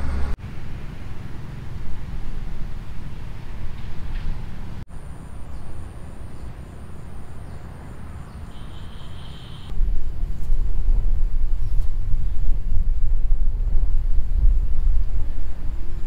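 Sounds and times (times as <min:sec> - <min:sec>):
outdoor rumble: 0:00.0 - 0:08.4.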